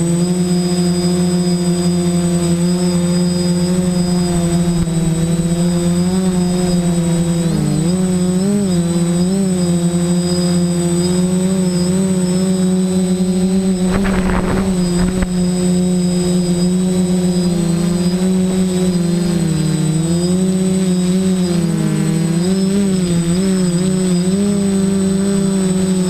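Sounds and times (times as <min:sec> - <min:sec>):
drone propellers buzzing whine: 0:00.0 - 0:26.0
short rush of noise: 0:13.8 - 0:15.5.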